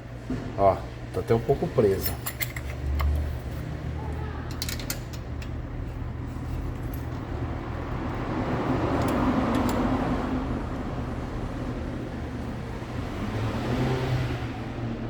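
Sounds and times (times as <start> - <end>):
metallic clicks of hand tools: 2.0 - 3.2, 4.5 - 5.6, 9.0 - 9.8.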